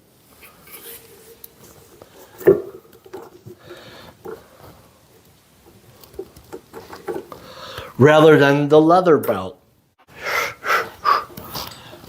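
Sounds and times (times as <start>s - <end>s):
handling knocks and rubbing: 0.4s - 7.5s.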